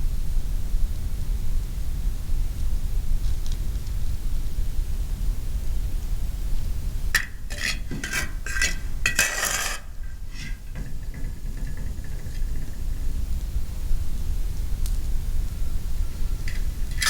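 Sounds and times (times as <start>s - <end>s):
metal utensil scraping a pan: 7.2s - 12.8s, 16.5s - 17.0s.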